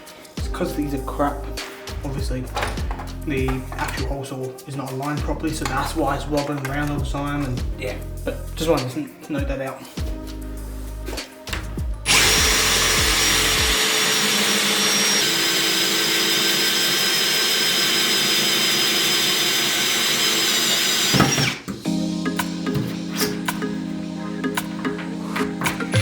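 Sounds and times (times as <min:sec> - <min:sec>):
power drill hole saw cutting wall: 0:12.1 - 0:21.8.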